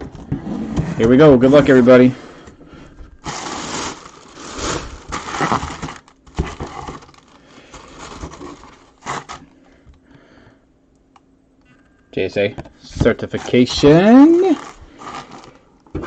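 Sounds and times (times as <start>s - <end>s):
packaging crinkling and tearing: 3.2s - 9.5s, 13.4s - 15.7s.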